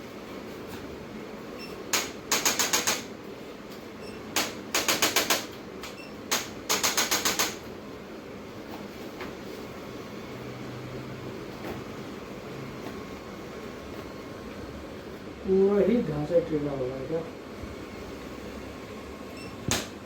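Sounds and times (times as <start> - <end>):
sharp rapid tapping clicks: 1.9 - 3.1, 4.4 - 5.5, 6.3 - 7.6.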